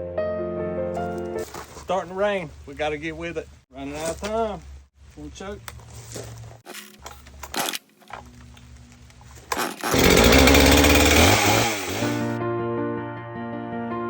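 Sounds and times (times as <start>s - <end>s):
music: 0.0s - 1.7s, 12.2s - 14.0s
chainsaw at full throttle: 9.6s - 12.4s.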